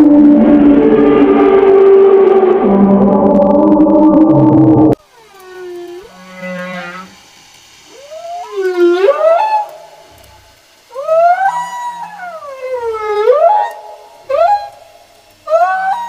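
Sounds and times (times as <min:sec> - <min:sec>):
whale calls: 0:00.0 - 0:07.2, 0:07.9 - 0:16.0.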